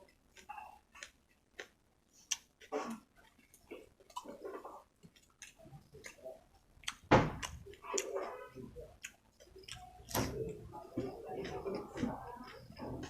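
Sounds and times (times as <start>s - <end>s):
chewing and mouth smacks: 0.3s - 8.4s, 9.0s - 10.2s.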